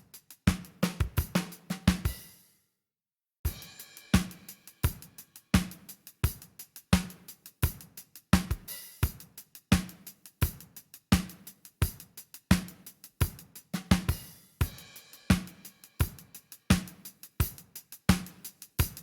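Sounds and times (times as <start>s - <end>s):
hi-hat ticks: 0.0s - 2.3s, 3.5s - 19.0s
snare drum: 0.0s - 2.4s, 3.5s - 19.0s
kick drum: 0.5s - 2.2s.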